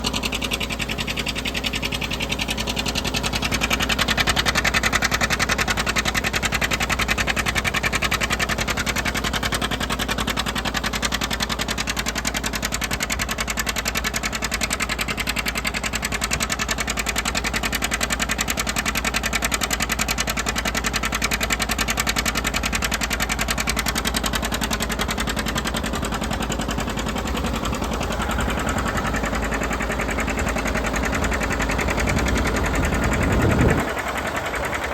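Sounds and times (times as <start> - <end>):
diesel engine running under load: 0.0 - 34.9.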